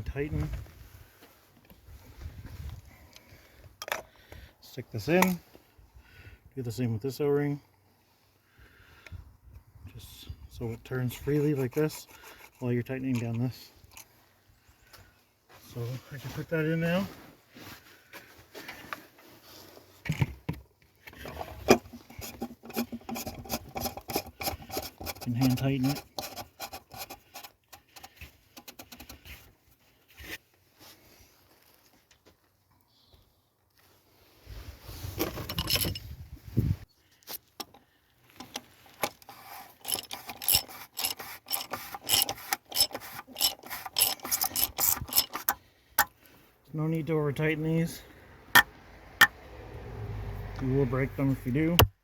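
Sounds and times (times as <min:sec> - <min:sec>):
rubbing and scraping: 0:10.6 - 0:14.2, 0:21.2 - 0:31.7, 0:38.3 - 0:45.6
socket ratchet clicking: 0:39.0 - 0:46.1.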